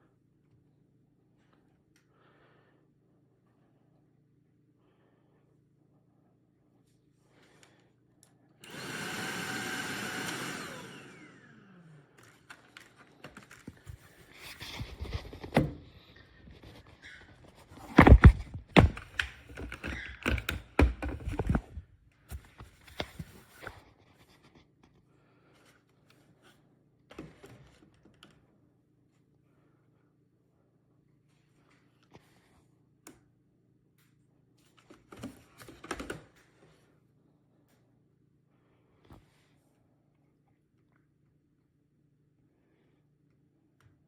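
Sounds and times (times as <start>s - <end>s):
vacuum motor whine: 8.6s - 12.5s.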